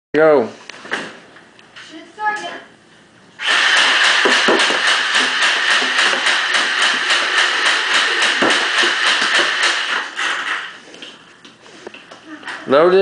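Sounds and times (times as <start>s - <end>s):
toy blaster motor whine: 3.4s - 10.7s
rapid dart shots: 3.4s - 10.8s.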